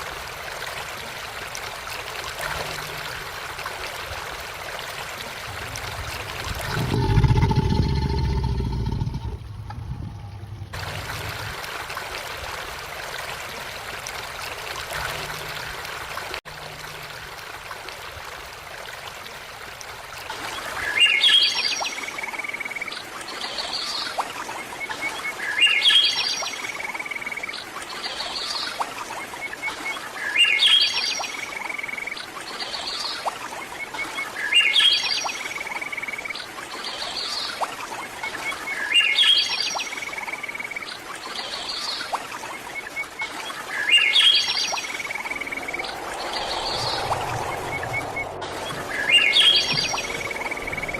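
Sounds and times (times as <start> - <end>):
trickling stream: 0.0 - 50.9
songbird chirping: 38.2 - 50.9.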